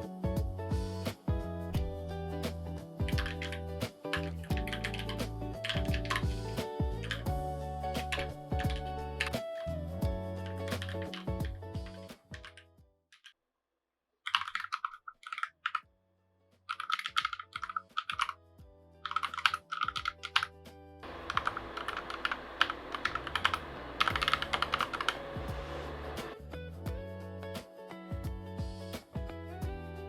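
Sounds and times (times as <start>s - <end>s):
mechanical keyboard typing: 3.2s - 6.3s, 14.3s - 15.8s, 16.7s - 18.4s, 19.0s - 20.5s, 21.1s - 26.4s.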